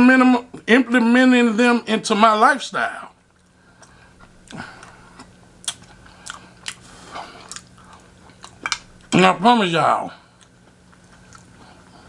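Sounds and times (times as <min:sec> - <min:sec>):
man chewing crunchy food: 0:03.2 - 0:09.2, 0:10.2 - 0:12.0.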